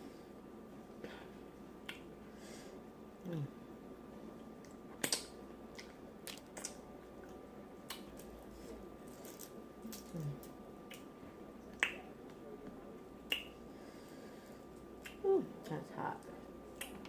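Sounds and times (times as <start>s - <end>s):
wet smacking eating sounds: 4.6s - 8.3s, 10.8s - 12.1s, 13.3s - 13.6s, 16.7s - 17.0s.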